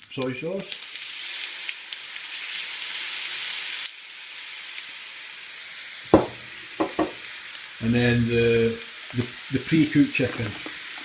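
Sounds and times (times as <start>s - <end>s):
rice sizzling in a hot pan: 0.0s - 11.0s
sharp knocks: 6.2s - 7.2s.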